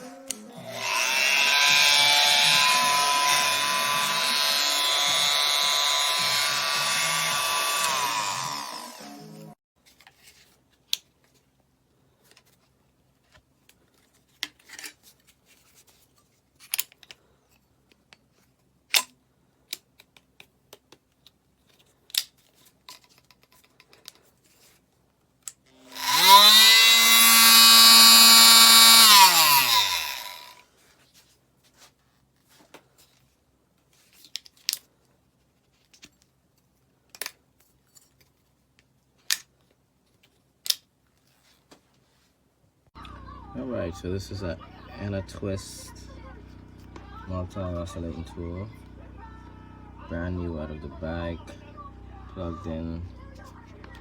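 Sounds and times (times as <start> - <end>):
oscillating multitool whine: 25.8 - 30.5, 43.0 - 54.0.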